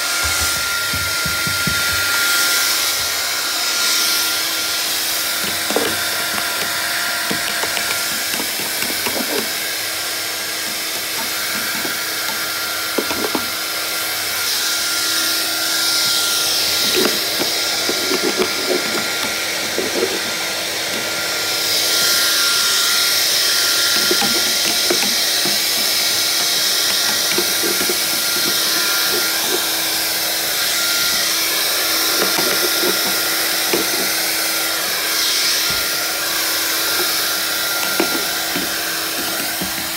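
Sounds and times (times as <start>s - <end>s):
vacuum cleaner running: 0.0s - 39.9s
clicks and rattles: 5.1s - 13.8s, 16.0s - 30.1s, 32.0s - 34.4s, 36.7s - 39.9s.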